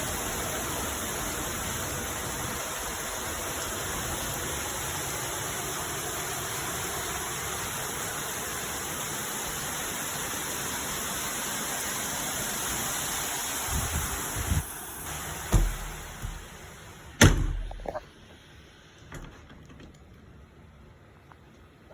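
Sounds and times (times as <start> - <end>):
knocks on door: 15.5 - 16.6, 17.2 - 18.0
door banging shut: 15.5 - 18.2, 19.1 - 20.0.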